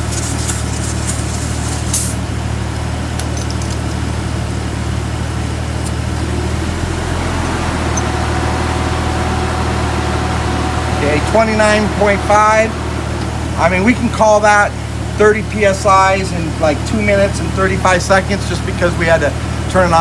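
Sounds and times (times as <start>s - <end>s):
vehicle engine idling: 0.0s - 20.0s
brief air hiss: 1.7s - 2.2s.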